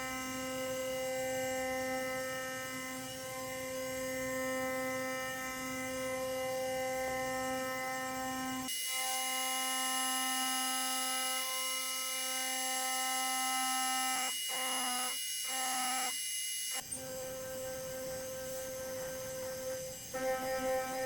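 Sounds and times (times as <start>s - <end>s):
router spindle whine milling metal: 0.0s - 16.8s.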